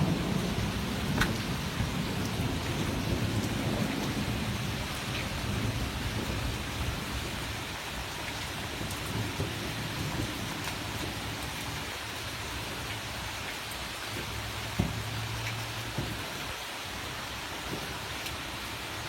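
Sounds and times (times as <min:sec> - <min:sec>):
low thunder rumble: 0:00.0 - 0:13.3
heavy rain pouring: 0:00.0 - 0:19.0.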